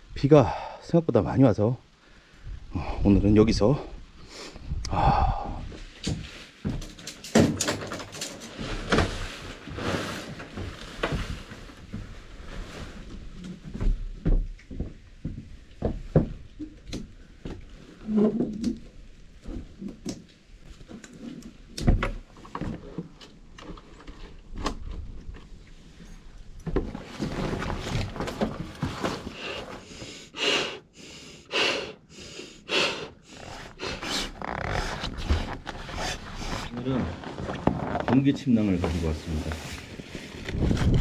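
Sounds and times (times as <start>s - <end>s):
camping gear knocks and thunks: 6.0s - 12.2s, 26.6s - 29.8s
irregular rustling: 33.3s - 41.0s.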